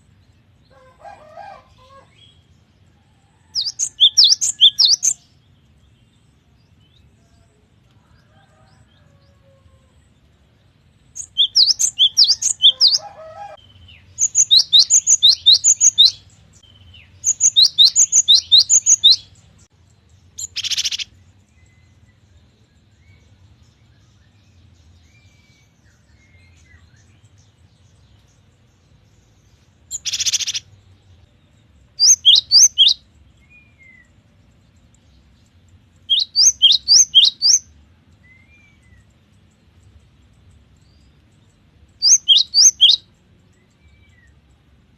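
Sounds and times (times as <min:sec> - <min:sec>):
bird whistled song: 0:03.6 - 0:05.2, 0:11.2 - 0:19.3, 0:20.4 - 0:21.1, 0:29.9 - 0:30.7, 0:32.0 - 0:34.1, 0:36.1 - 0:37.6, 0:38.2 - 0:39.1, 0:42.0 - 0:43.1
harsh rasping bird calls: 0:11.2 - 0:13.6, 0:20.4 - 0:21.1, 0:29.9 - 0:30.7.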